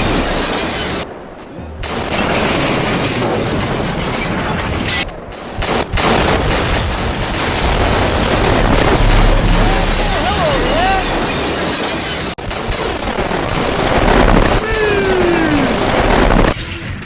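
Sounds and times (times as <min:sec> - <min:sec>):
train crash booms and impacts: 0:01.8 - 0:16.6.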